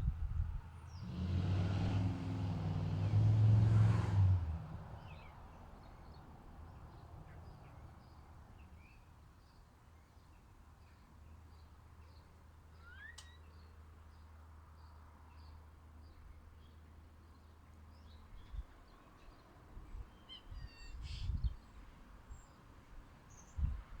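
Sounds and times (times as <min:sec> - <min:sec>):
motor vehicle passing: 0:00.9 - 0:08.5
small birds chirping: 0:05.0 - 0:22.6.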